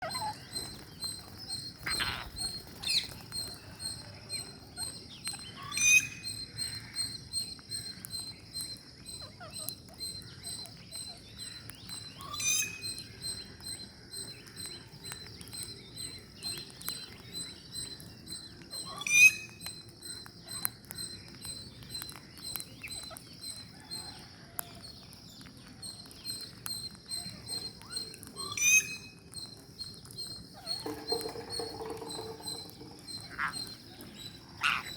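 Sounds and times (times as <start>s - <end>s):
high-pitched ringing tone: 30.6s - 34.8s.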